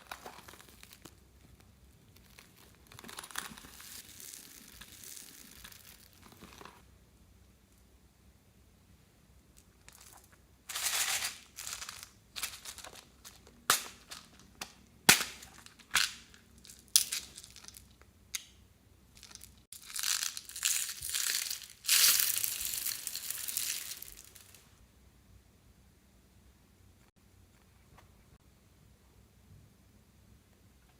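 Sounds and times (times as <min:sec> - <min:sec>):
crunchy slime crackling: 0:00.0 - 0:06.8, 0:19.3 - 0:24.6.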